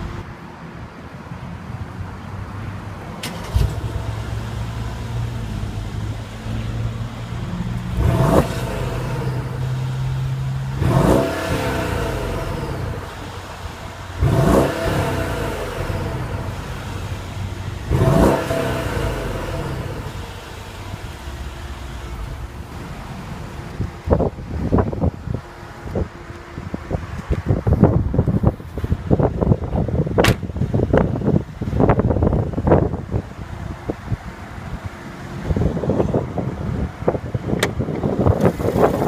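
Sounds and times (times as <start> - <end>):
car engine starting and revving: 3.1 - 26.1, 34.4 - 39.0.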